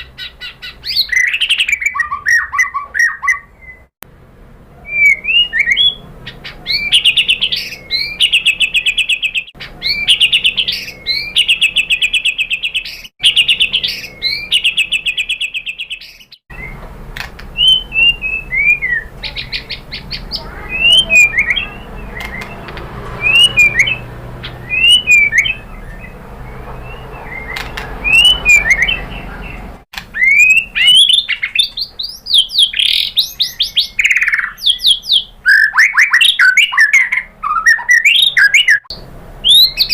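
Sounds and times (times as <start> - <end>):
bird whistled slurs: 4.8 - 6.0, 17.6 - 24.0, 24.6 - 29.6, 30.2 - 39.9.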